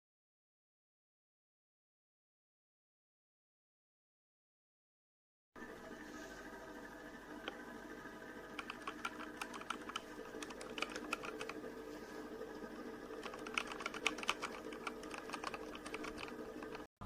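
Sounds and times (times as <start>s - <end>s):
faint steady hum: 5.6s - 16.9s
mechanical keyboard keystroke clicks: 8.6s - 11.6s, 13.2s - 16.9s.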